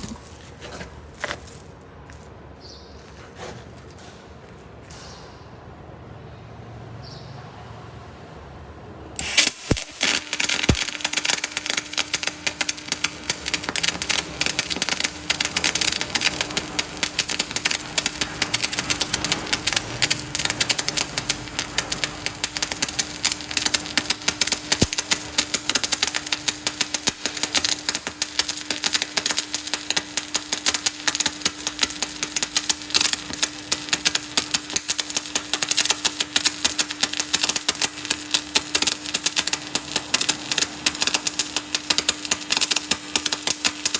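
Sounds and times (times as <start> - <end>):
welding arc crackle: 0.0 - 0.5, 9.2 - 43.9
steady hum: 9.2 - 43.9.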